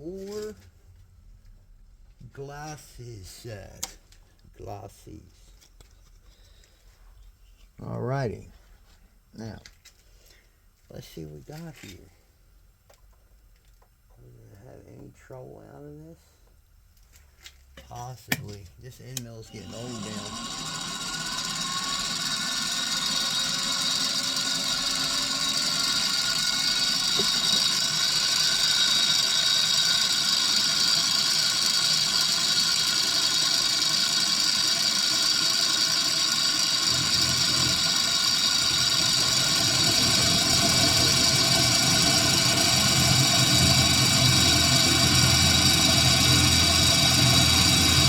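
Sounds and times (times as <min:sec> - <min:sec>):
milling machine whine: 0:19.3 - 0:48.0.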